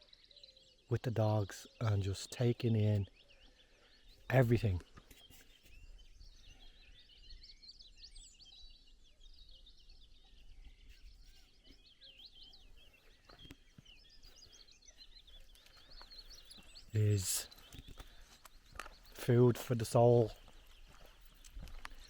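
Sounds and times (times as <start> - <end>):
songbirds chirping: 0.0 - 22.0.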